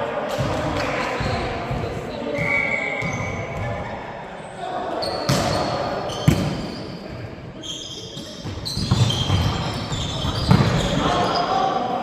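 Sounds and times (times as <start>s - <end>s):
players' voices: 0.0s - 12.0s
shoe squeaks: 5.0s - 11.6s.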